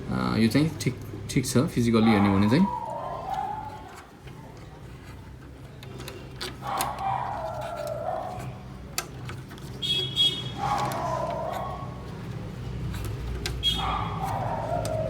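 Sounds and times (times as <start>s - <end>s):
plastic scraping: 2.6s - 15.0s
plastic parts clicking: 3.2s - 15.0s.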